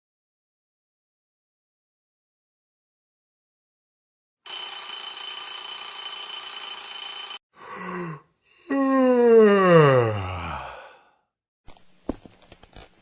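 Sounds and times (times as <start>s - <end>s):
electric bell ringing: 4.5s - 7.4s
person groaning: 7.6s - 11.2s
person sighing: 7.6s - 11.2s.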